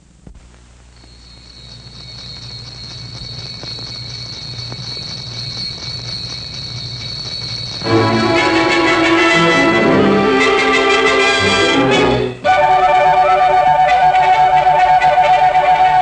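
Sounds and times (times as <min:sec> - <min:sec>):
faint crackles: 0:00.0 - 0:07.8
low hum and hiss: 0:00.0 - 0:16.0
high-pitched whine: 0:00.9 - 0:16.0.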